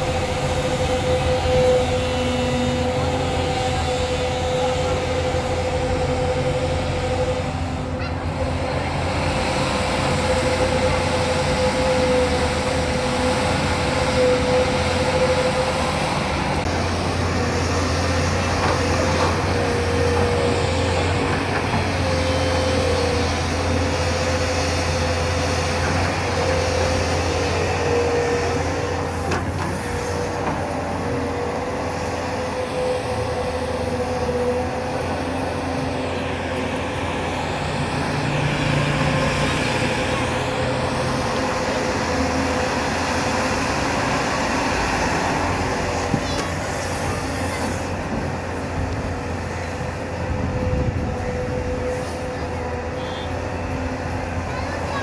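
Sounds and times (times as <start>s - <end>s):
excavator diesel engine droning: 0.0s - 55.0s.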